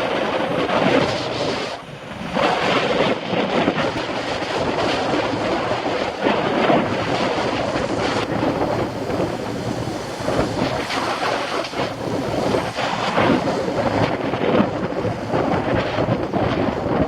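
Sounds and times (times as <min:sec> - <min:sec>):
wind rushing over microphone: 0:00.0 - 0:17.0
road traffic noise: 0:06.4 - 0:17.0.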